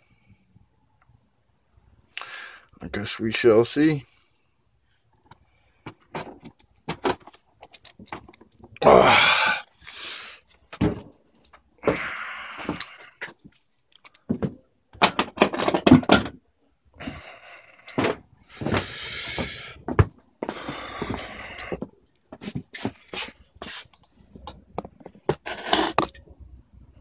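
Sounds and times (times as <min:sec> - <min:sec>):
hardware clicks and knocks: 0:05.2 - 0:08.8, 0:12.6 - 0:16.4, 0:17.9 - 0:18.8.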